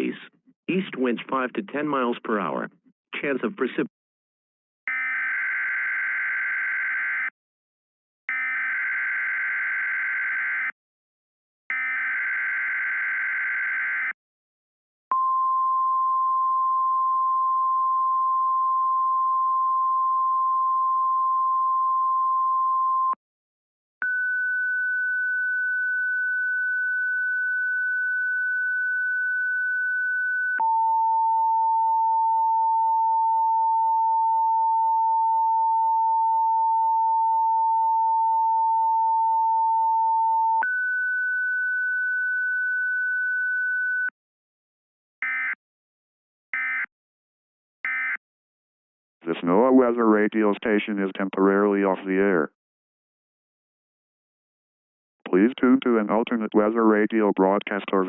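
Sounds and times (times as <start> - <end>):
electronic alarm tones: 15.1 - 23.2, 24.0 - 44.1, 45.2 - 45.6.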